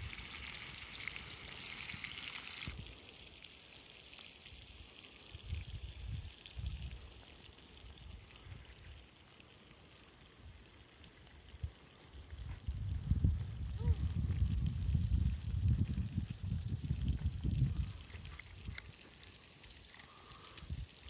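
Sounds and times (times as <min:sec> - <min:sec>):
meat sizzling over a campfire: 0:00.0 - 0:06.2.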